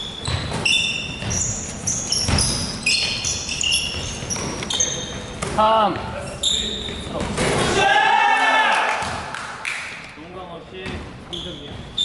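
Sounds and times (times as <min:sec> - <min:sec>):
sneaker squeaks on floor: 0:00.0 - 0:07.4, 0:11.3 - 0:12.0
basketball bouncing on court: 0:00.2 - 0:06.2, 0:09.0 - 0:09.3.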